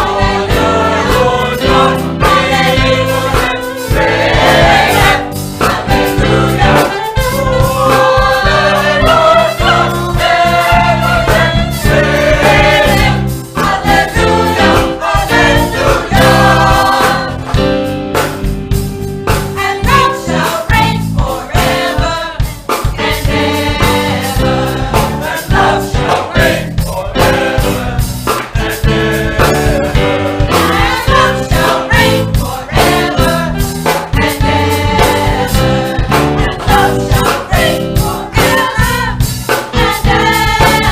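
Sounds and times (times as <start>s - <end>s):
choir singing with accompaniment: 0.0s - 40.9s.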